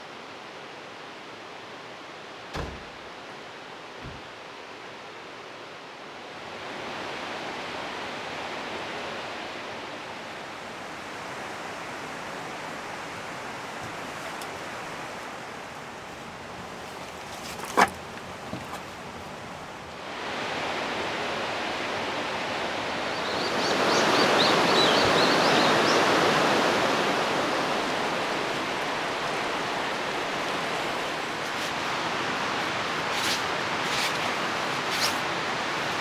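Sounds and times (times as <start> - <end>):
rain falling: 20.6 - 36.0.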